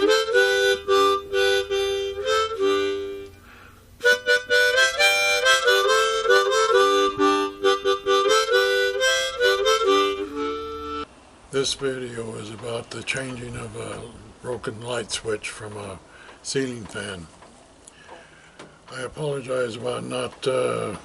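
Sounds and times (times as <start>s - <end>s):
harmonica playing chords: 0.0s - 11.1s.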